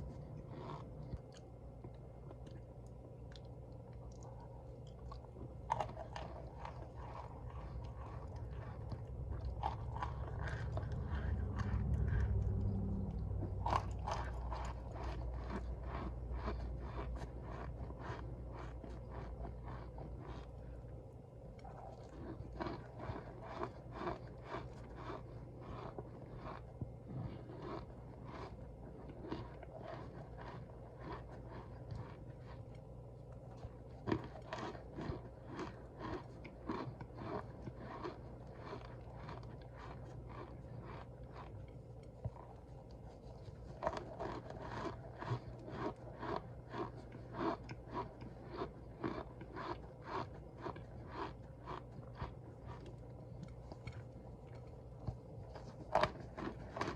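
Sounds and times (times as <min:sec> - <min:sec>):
faint low hum: 0:00.0 - 0:56.9
cornstarch crunching and squeaking: 0:43.4 - 0:52.9.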